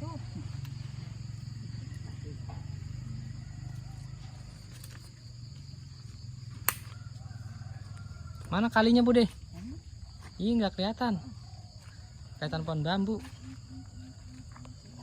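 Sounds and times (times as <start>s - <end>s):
insects chirring: 0.0s - 15.0s
sharp click: 6.7s - 7.0s.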